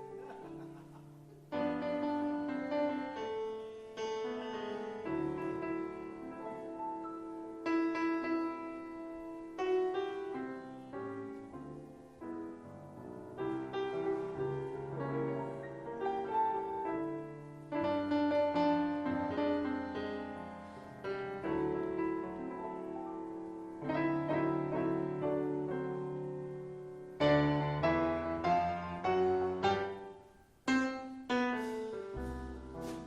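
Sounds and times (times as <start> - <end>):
slow gentle piano: 0.0 - 33.0.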